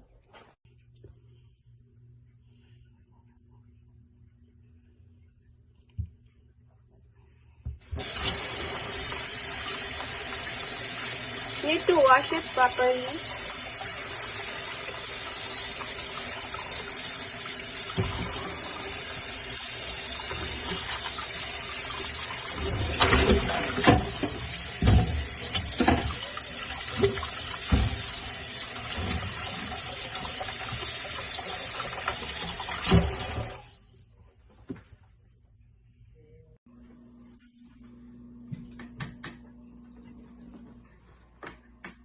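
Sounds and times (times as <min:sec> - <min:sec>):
tap running into a sink: 0:22.6 - 0:31.1.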